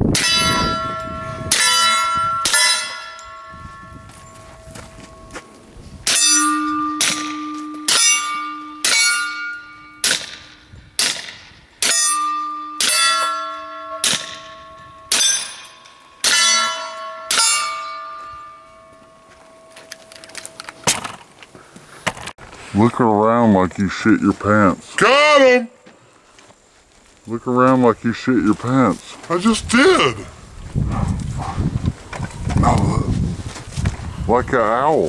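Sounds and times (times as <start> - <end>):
steel target clanging: 0.1 - 21.3.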